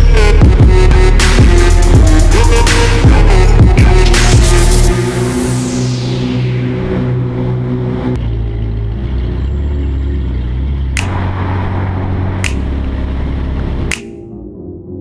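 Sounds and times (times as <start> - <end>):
electronic music: 0.0 - 8.3, 10.9 - 15.0
heavy bass: 0.0 - 15.0
sharp percussive hit: 13.9 - 14.4.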